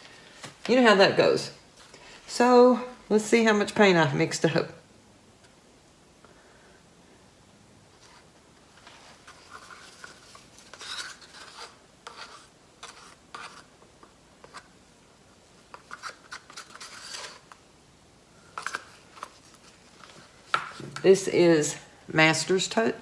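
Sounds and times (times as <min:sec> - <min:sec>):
scraping and rubbing of cups: 0:08.8 - 0:13.7, 0:15.7 - 0:17.5.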